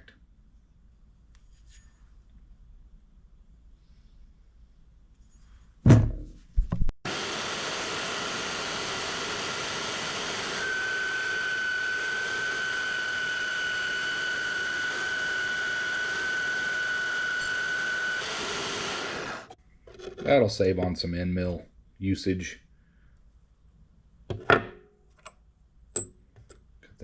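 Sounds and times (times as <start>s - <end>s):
power saw cutting metal: 7.1s - 19.6s.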